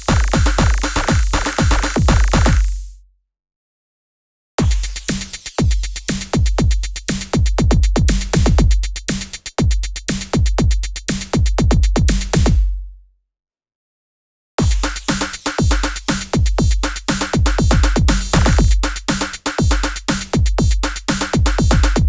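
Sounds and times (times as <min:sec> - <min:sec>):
electronic dance music: 0:00.0 - 0:02.9, 0:14.6 - 0:22.0.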